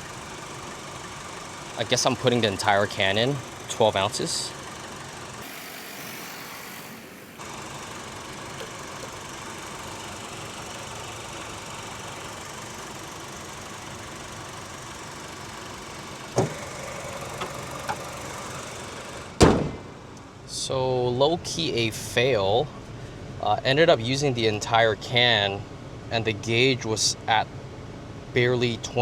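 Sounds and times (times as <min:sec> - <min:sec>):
car engine idling: 0:00.0 - 0:05.6, 0:06.7 - 0:19.3
ac compressor running: 0:00.0 - 0:21.0.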